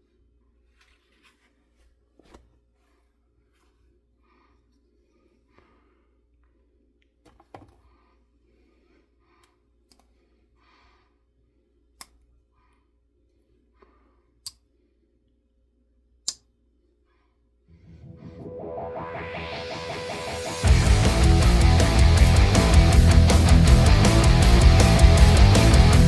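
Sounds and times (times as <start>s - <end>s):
soft rustling handling: 0.4s - 5.7s.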